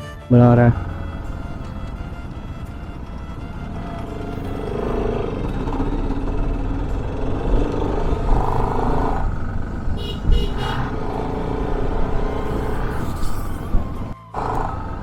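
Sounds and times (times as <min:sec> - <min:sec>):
motorcycle engine rumble: 0:00.0 - 0:15.0
wind on microphone: 0:07.5 - 0:14.2
vehicle horn beeps: 0:09.8 - 0:14.1.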